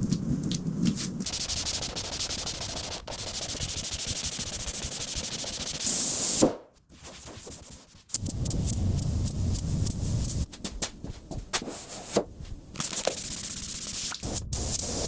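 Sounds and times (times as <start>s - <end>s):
rapid sanding scratching: 1.2s - 5.9s, 7.0s - 11.0s, 12.8s - 14.2s.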